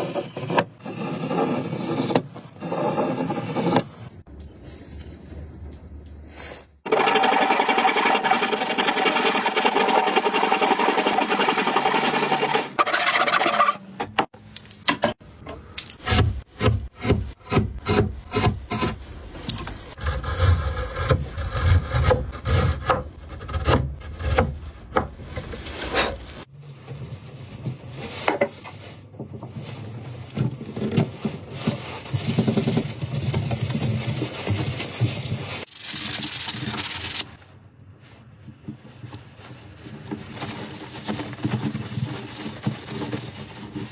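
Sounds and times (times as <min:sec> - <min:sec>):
tool rasping wood: 0:06.9 - 0:13.8, 0:15.9 - 0:26.5.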